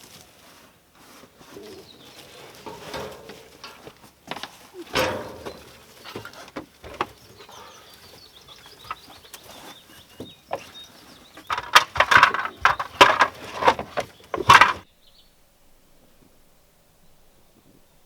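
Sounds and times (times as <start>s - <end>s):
birds calling and clucking: 1.0s - 14.9s.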